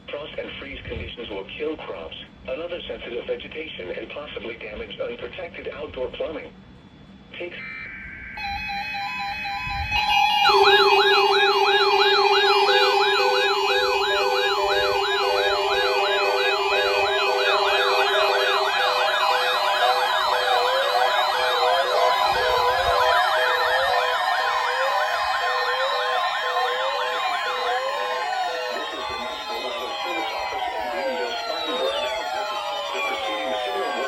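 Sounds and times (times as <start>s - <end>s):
steady alarm tones: 7.4s - 34.0s
electronic siren yelping: 7.6s - 34.0s.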